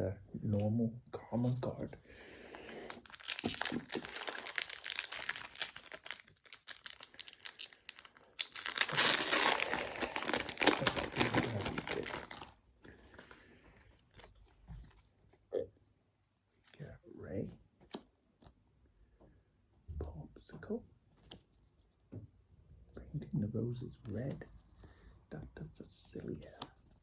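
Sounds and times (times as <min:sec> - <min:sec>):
plastic wrapper crinkling: 0:02.6 - 0:12.6.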